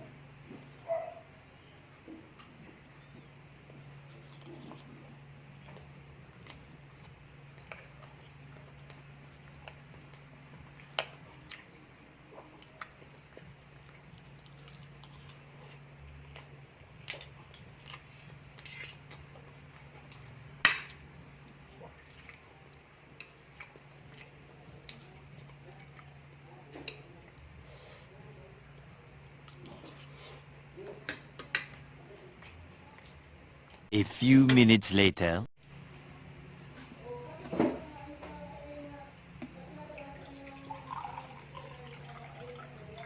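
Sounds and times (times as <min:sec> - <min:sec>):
chewing: 0:03.7 - 0:20.4, 0:21.7 - 0:27.5, 0:32.3 - 0:33.8.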